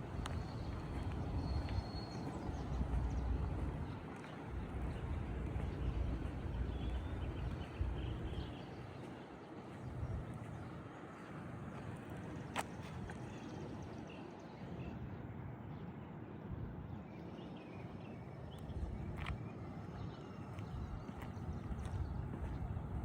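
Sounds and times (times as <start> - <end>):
low rumble: 0.0 - 8.6.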